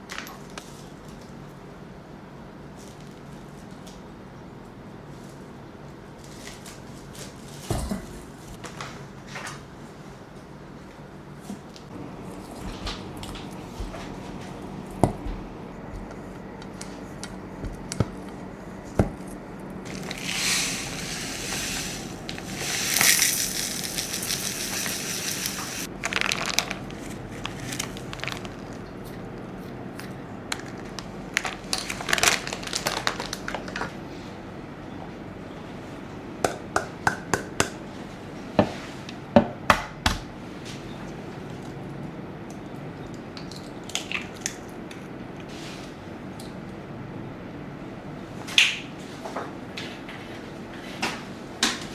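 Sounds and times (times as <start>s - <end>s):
utensils clicking and knocking: 19.0s - 28.8s
hissing crinkling: 19.6s - 33.9s.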